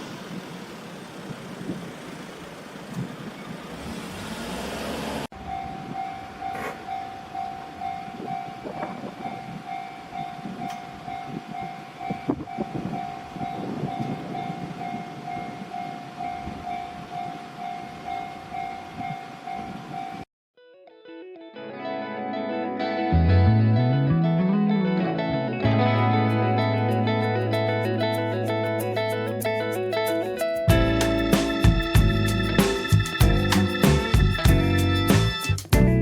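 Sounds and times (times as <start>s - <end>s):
passing vehicle rush: 0.0s - 5.3s
level crossing warning bell: 5.4s - 20.2s, 30.7s - 35.2s.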